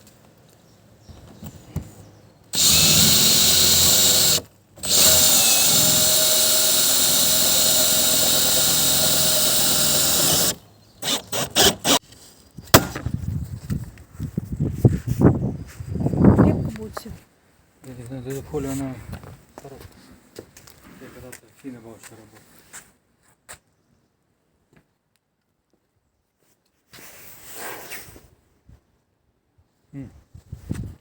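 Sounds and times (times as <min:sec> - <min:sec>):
power drill running: 0:02.5 - 0:12.0
sharp knock: 0:12.7 - 0:13.1.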